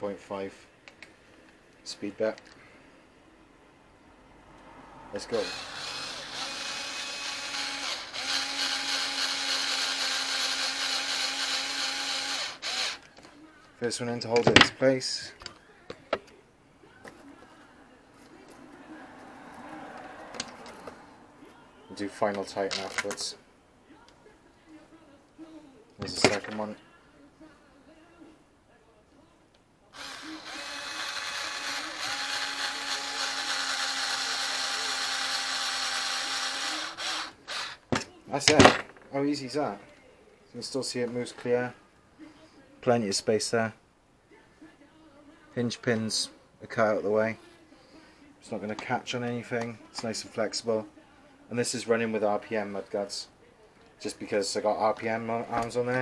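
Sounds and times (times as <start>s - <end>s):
cordless drill motor: 5.4s - 13.0s, 30.0s - 37.9s.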